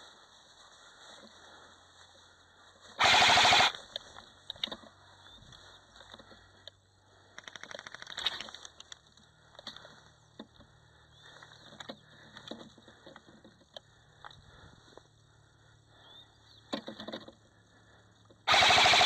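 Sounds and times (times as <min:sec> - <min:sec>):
airsoft gun full-auto burst: 0:03.0 - 0:03.8, 0:18.5 - 0:19.0.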